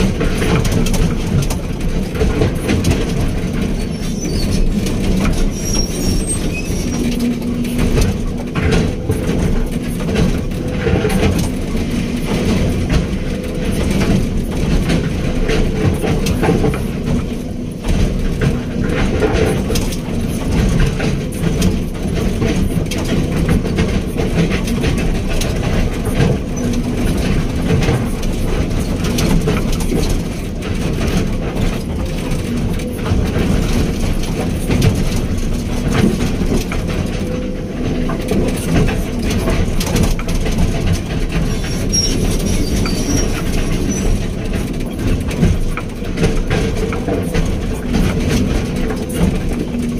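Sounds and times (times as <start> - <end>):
excavator diesel engine: 0.0 - 49.9
metallic clanks and rattles: 0.0 - 49.9.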